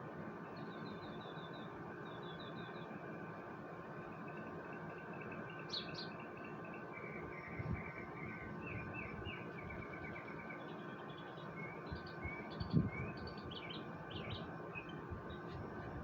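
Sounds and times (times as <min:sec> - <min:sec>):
steady outdoor hum: 0:00.0 - 0:16.0
birds chirping: 0:04.2 - 0:15.8.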